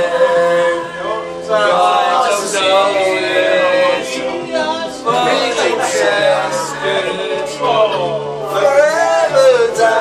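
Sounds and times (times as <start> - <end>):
men singing together: 0.0 - 10.0.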